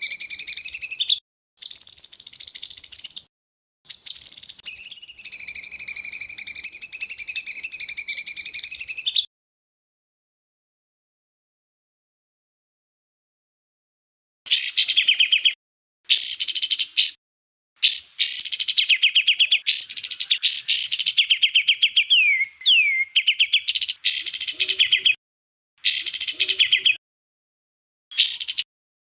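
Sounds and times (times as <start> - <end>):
bird sweeping whistled notes: 17.9 - 24.4.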